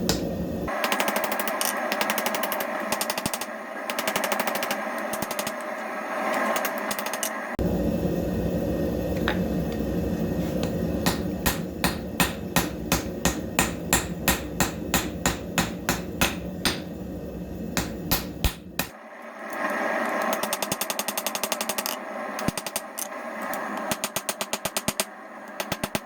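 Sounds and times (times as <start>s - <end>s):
hammer striking hot steel on anvil: 0.0s - 5.6s, 11.0s - 17.0s, 17.7s - 19.0s, 23.8s - 26.0s
low rumble: 7.3s - 14.0s.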